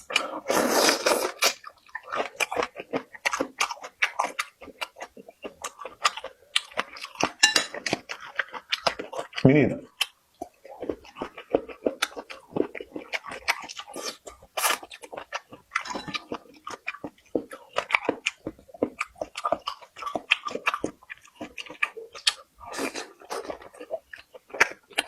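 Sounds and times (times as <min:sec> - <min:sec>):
chewing mouth clicks and smacks: 0:10.0 - 0:25.0.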